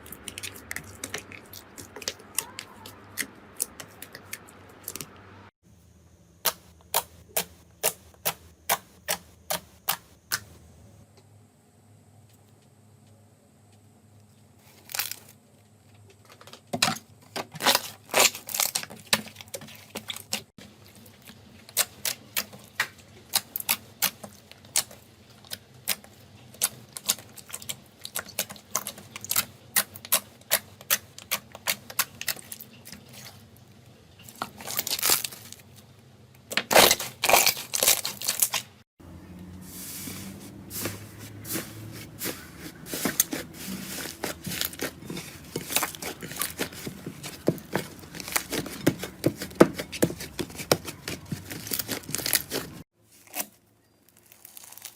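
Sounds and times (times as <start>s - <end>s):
slime crackling: 40.7s - 53.4s, 54.1s - 54.9s.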